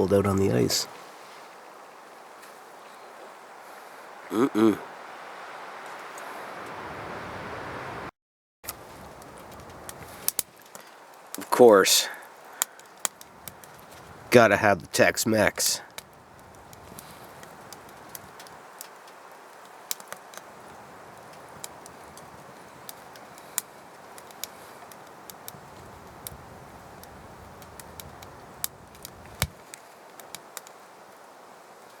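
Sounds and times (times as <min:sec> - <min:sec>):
wood fire crackling and popping: 0:08.7 - 0:32.0.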